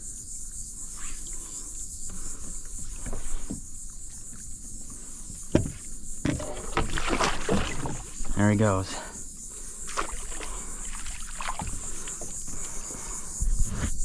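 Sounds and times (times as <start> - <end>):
insects droning: 0.0 - 14.0
knocks against kayak: 5.4 - 8.3
water splashing: 5.6 - 12.9.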